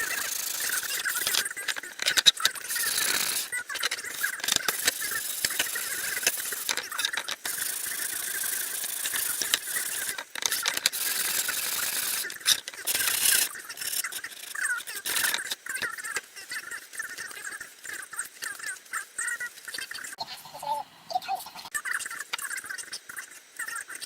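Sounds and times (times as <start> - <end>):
rough scraping: 0.0 - 15.6.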